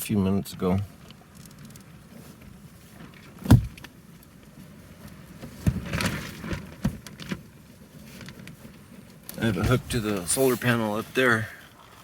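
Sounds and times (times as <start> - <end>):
sharp thump: 3.4 - 3.8.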